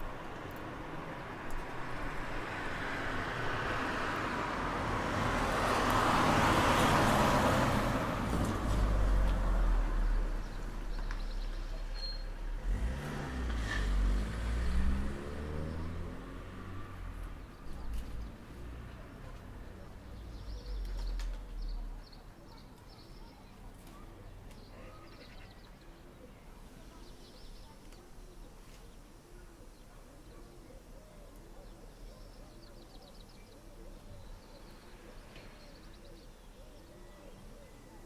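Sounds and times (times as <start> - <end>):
car passing by: 1.6 - 10.8, 12.3 - 19.1.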